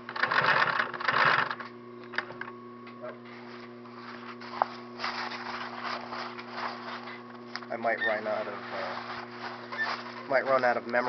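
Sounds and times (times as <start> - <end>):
steady low hum: 0.0 - 11.0
fabric rustling and scraping: 3.4 - 10.8
brief squeak: 9.7 - 10.0.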